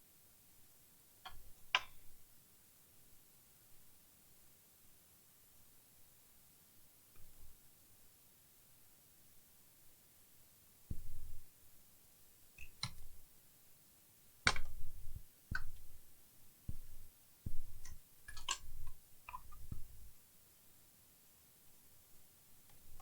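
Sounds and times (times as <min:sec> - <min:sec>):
small hard objects clicking: 0:17.8 - 0:18.7.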